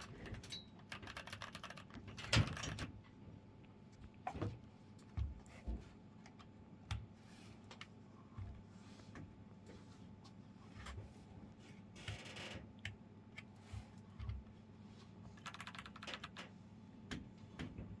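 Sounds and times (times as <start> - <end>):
mechanical keyboard typing: 0.0 - 2.8, 15.4 - 16.4.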